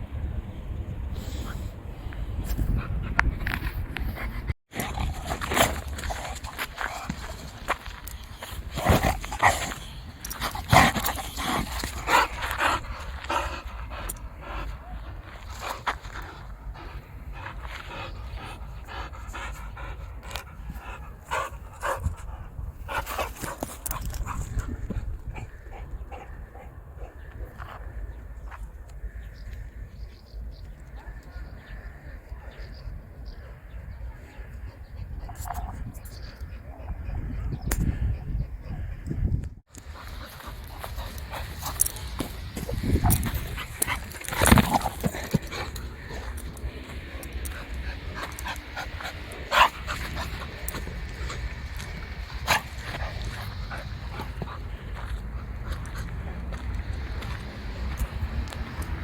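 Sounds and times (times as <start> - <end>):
dog panting: 2.6 - 28.2, 39.7 - 59.0.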